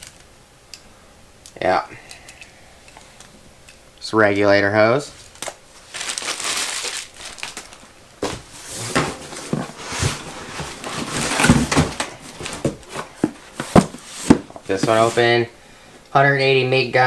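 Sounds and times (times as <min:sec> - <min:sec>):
packaging rustling and crinkling: 0:05.1 - 0:15.5.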